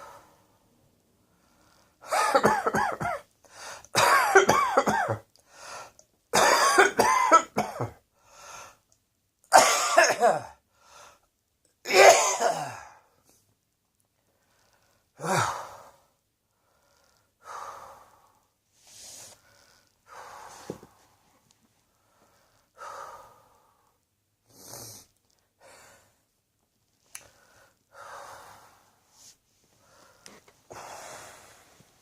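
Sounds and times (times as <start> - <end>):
person coughing: 2.1 - 3.3, 4.0 - 5.2, 6.4 - 8.0, 9.5 - 10.6, 11.9 - 13.0
heavy breathing: 14.3 - 21.2, 27.2 - 32.0.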